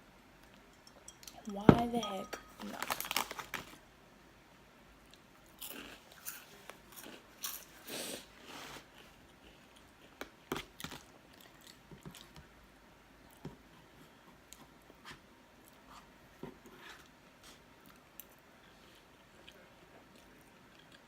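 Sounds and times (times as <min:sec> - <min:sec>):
person chewing food: 0:05.0 - 0:08.0, 0:08.9 - 0:12.5, 0:17.0 - 0:21.0.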